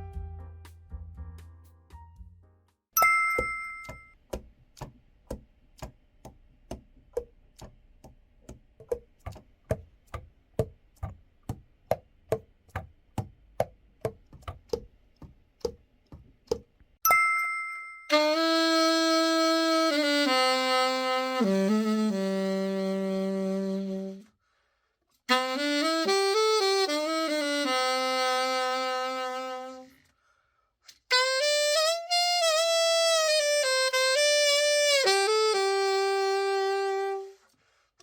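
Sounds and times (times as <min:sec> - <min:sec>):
bright two-tone chime: 0:03.0 - 0:04.2, 0:17.1 - 0:18.1
saxophone sustained notes: 0:18.1 - 0:24.3, 0:25.3 - 0:30.0, 0:31.1 - 0:37.4.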